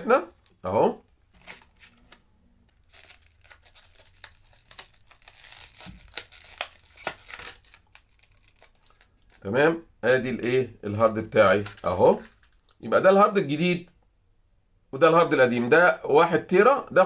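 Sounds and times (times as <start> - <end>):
packaging tearing and crinkling: 1.3 - 9.5, 10.9 - 12.6.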